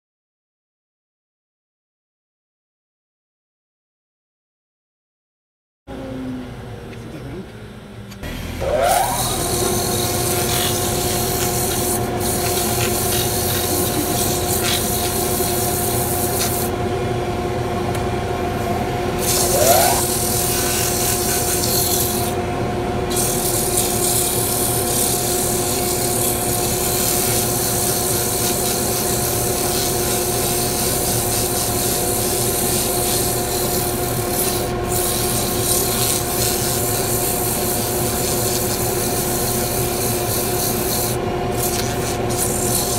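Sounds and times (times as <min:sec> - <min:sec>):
lathe motor humming: 0:05.9 - 0:42.9
short rising whine: 0:07.6 - 0:23.2
rasping against spinning wood: 0:08.6 - 0:16.8, 0:19.1 - 0:22.4, 0:23.0 - 0:42.9.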